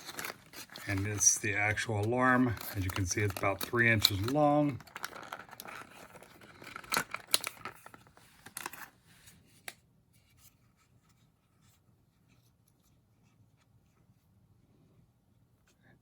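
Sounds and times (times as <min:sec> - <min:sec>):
plastic handling ticks: 0:00.0 - 0:08.9
packaging crackling and rustling: 0:00.0 - 0:09.4.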